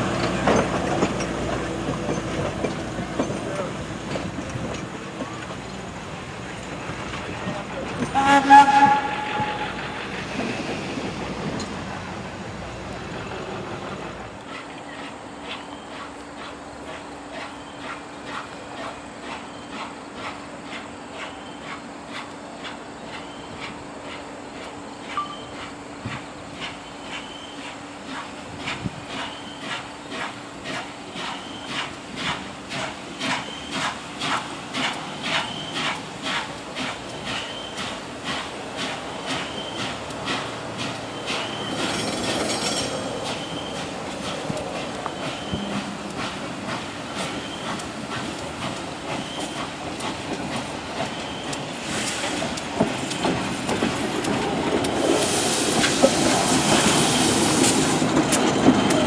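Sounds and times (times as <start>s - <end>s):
steam locomotive chuffing: 0.0s - 59.0s
train rumbling past: 0.0s - 59.0s
steam train whistle: 8.0s - 10.4s, 45.0s - 49.7s.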